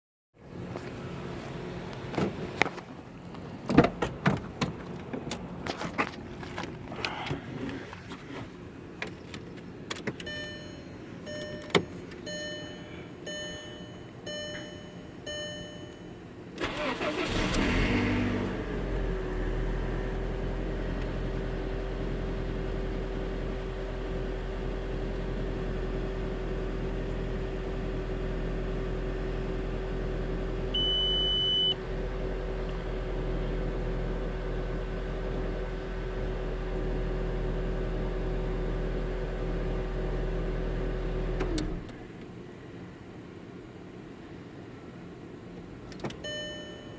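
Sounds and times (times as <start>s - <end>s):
car engine cranking and idling: 0.4s - 46.9s
loud beep: 10.3s - 16.2s, 30.8s - 31.8s.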